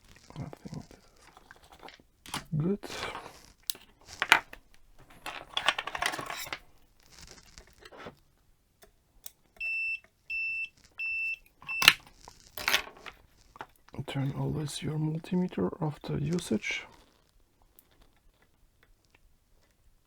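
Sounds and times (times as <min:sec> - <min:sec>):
crinkly handling noise: 0:00.0 - 0:09.6, 0:10.7 - 0:20.0
multimeter beeping: 0:09.6 - 0:12.0.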